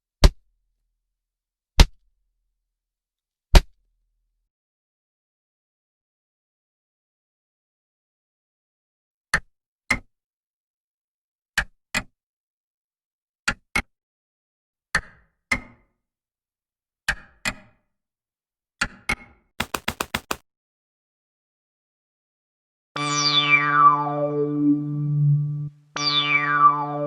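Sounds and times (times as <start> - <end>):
knocks on a hard surface: 19.6 - 20.4.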